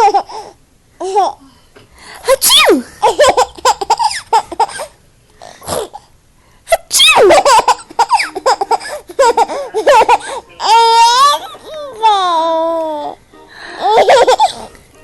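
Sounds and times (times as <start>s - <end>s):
baby laughing and squealing: 2.3s - 4.9s, 6.7s - 13.2s, 13.8s - 14.7s.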